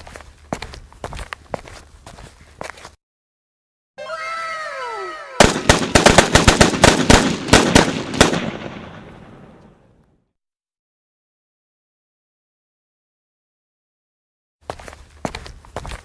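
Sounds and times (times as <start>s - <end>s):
falling whistle tone: 4.0s - 5.4s
rapid gunshots: 5.4s - 9.6s.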